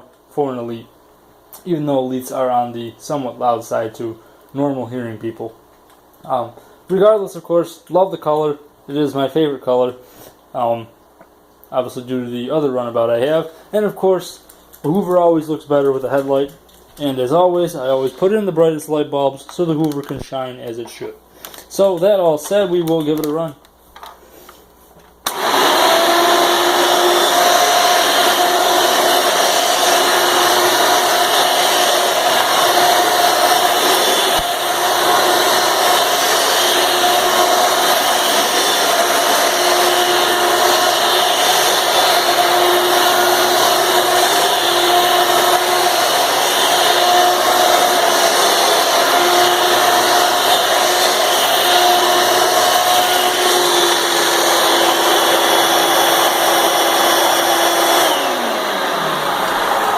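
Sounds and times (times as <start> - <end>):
vacuum cleaner running: 25.2 - 59.9.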